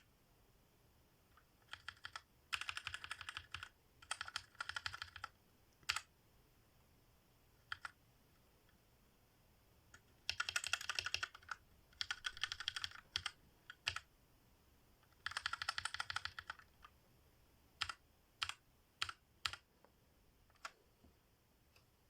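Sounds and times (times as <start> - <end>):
mechanical keyboard typing: 1.4 - 6.1, 7.6 - 8.0, 9.9 - 14.1, 15.0 - 16.9, 17.8 - 19.7, 20.5 - 20.8.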